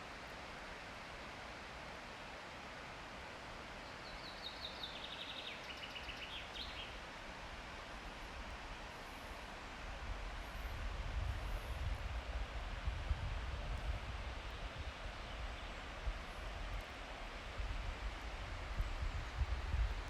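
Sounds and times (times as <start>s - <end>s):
steady outdoor hiss: 0.0s - 20.0s
small songbird singing: 3.9s - 7.0s.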